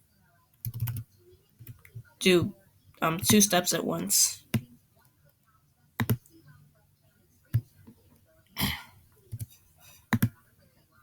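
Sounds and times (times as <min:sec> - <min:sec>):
computer mouse clicks: 0:10.1 - 0:10.4.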